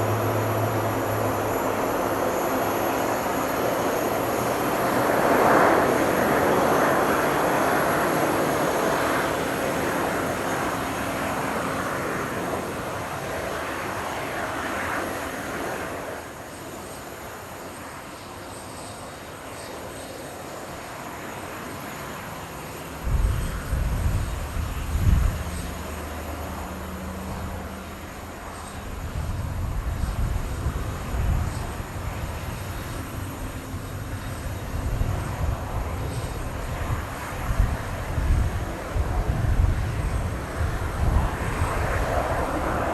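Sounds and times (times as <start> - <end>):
jet engine noise: 0.0 - 42.9
wind buffeting microphone: 23.0 - 42.9.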